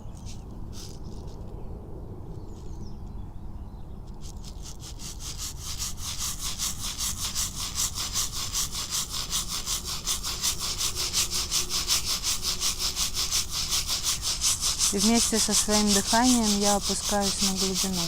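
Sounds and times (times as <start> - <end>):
rattles shaken in fast rhythm: 4.2 - 18.0.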